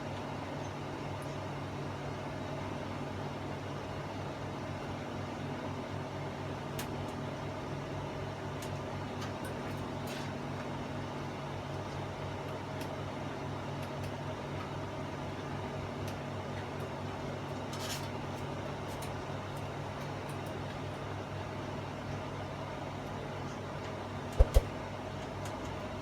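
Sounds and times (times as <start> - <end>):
electrical hum: 23.2 - 26.0.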